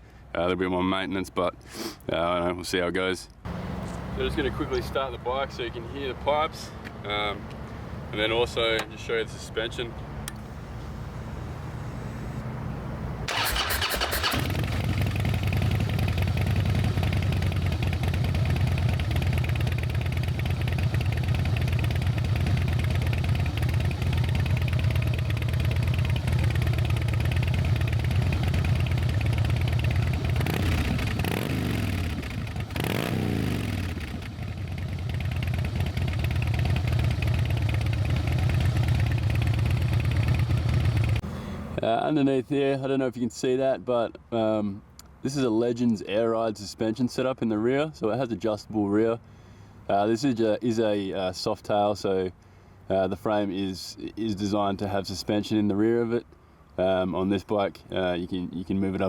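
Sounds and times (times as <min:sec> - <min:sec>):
motorcycle engine revving: 0:13.2 - 0:41.8
motorcycle starter cranking: 0:13.3 - 0:31.3
motorcycle engine idling: 0:13.3 - 0:41.7.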